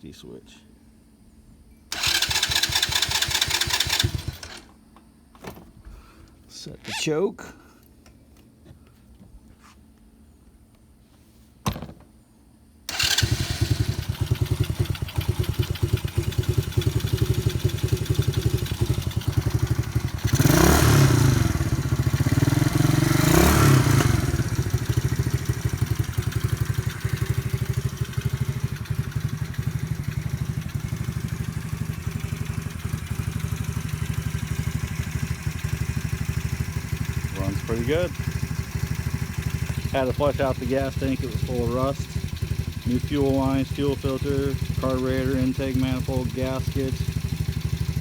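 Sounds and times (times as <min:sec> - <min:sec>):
small engine starting and idling: 0:01.9 - 0:04.8, 0:12.9 - 0:48.0.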